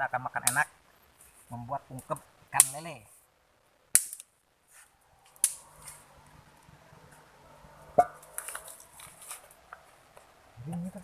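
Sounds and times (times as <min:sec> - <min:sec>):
faint steady background: 0:00.0 - 0:11.0
sharp clicks: 0:05.2 - 0:06.0.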